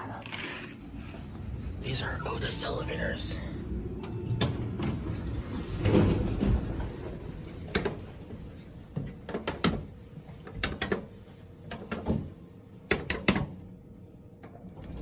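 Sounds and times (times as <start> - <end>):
low rumble: 0.0 - 7.7
sharp clicks and knocks: 7.6 - 12.3, 12.9 - 13.7.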